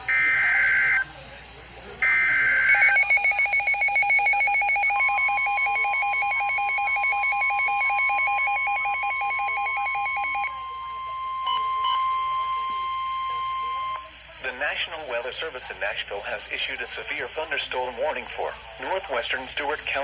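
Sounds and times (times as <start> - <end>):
data burst: 2.0 - 14.1
warbling electronic alarm: 2.0 - 14.1
steady attention tone: 2.0 - 14.3.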